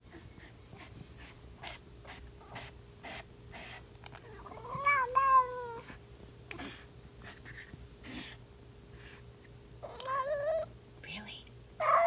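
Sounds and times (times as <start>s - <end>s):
cat meowing: 4.3s - 5.8s, 9.8s - 10.7s, 11.8s - 12.0s.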